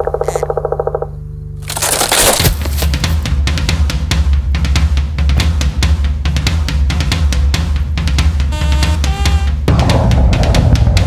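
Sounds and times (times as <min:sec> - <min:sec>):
heavy bass line: 0:00.0 - 0:11.0
quick drum beat: 0:02.4 - 0:11.0
cymbal crash: 0:09.7 - 0:11.0.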